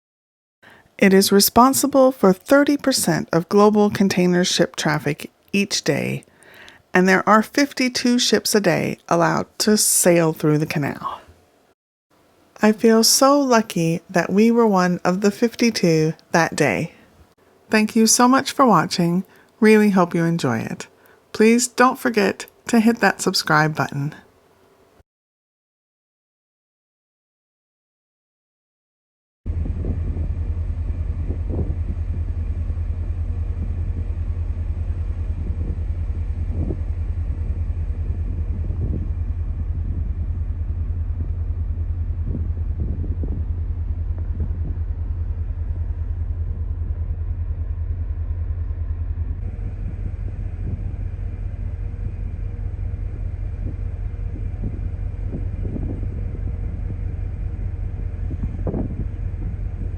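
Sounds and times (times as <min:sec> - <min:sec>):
ship low rumble: 0:29.5 - 0:59.9.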